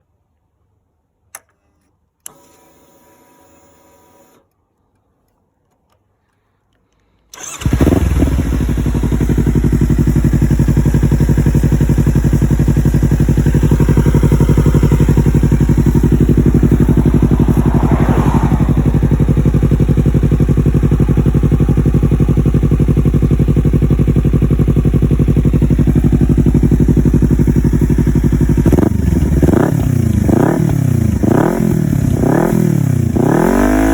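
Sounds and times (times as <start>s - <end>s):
motorcycle engine idling: 7.4s - 33.2s.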